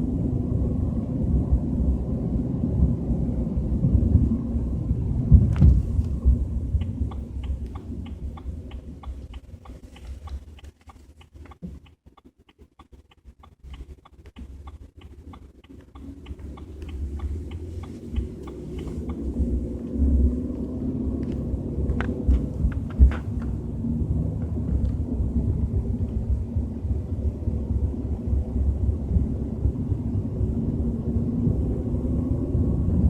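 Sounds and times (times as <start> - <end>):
low rumbling in car cabin: 0.0 - 33.0
quick even ticking: 6.8 - 19.3.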